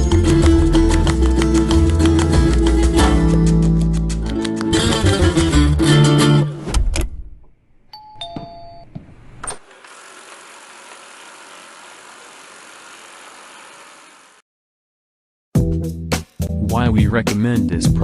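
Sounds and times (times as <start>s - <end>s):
robot vacuum whirring: 9.6s - 14.4s.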